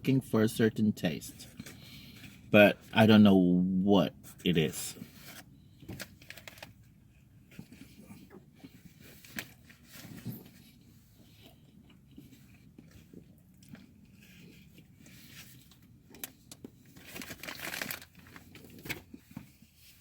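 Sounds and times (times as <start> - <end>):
chewing and biting food: 10.3 - 15.0
rustling: 16.8 - 20.0.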